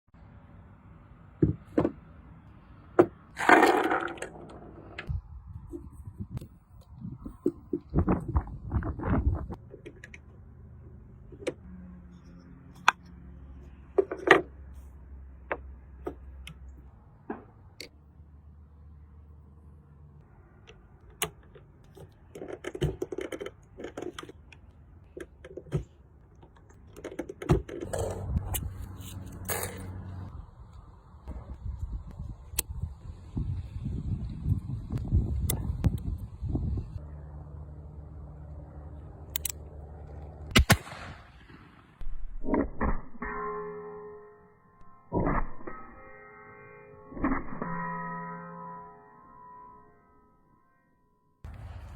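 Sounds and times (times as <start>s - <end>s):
revolver metallic clicks: 39.3s - 39.7s.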